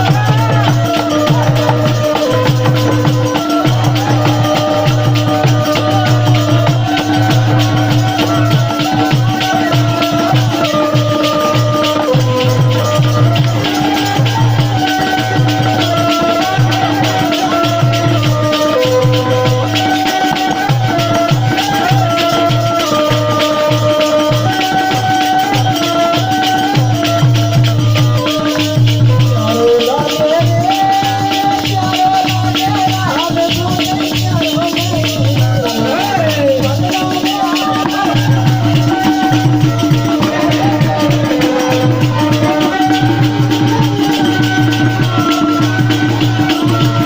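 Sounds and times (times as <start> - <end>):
hand drum beat: 0.0 - 47.0
jingling shaken percussion: 0.0 - 47.0.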